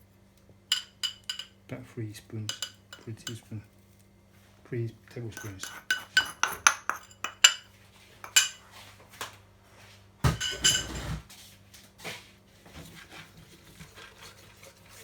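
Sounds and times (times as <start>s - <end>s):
metal spoon clinking against bowl: 0.7s - 1.6s, 2.5s - 3.5s, 5.4s - 8.6s, 10.3s - 11.0s
scraping and handling noise: 5.3s - 15.0s.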